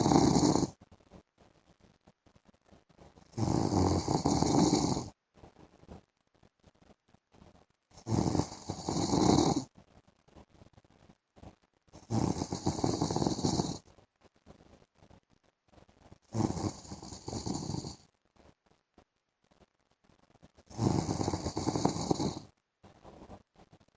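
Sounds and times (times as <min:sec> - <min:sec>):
man snoring: 0:00.0 - 0:00.7, 0:03.4 - 0:05.1, 0:08.0 - 0:09.6, 0:12.0 - 0:13.8, 0:16.3 - 0:18.0, 0:20.7 - 0:22.4.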